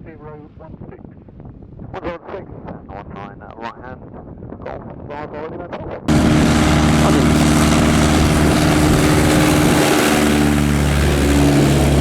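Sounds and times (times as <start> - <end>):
propeller aircraft engine droning: 6.1 - 12.0.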